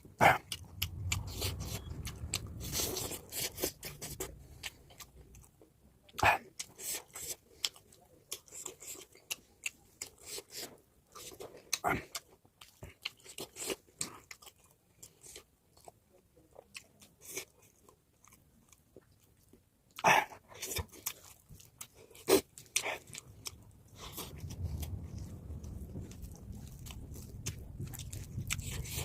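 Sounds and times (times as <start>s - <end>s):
low rumble: 0.0s - 5.2s, 23.2s - 29.0s
person chewing crunchy food: 0.0s - 29.0s.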